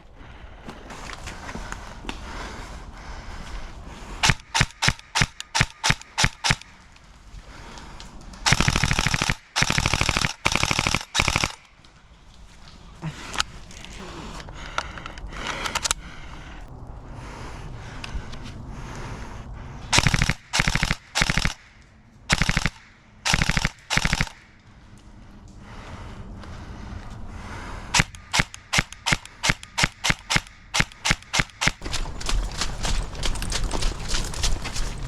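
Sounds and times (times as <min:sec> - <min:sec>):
airsoft gun firing: 0:04.2 - 0:06.8, 0:08.5 - 0:11.7, 0:20.0 - 0:24.5, 0:28.0 - 0:31.9.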